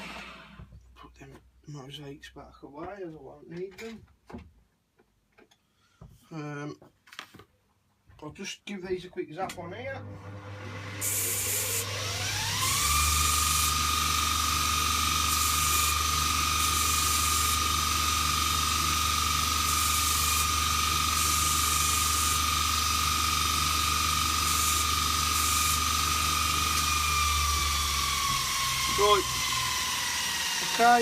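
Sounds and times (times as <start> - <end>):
bench grinder whine: 0.0 - 0.6, 10.0 - 31.0.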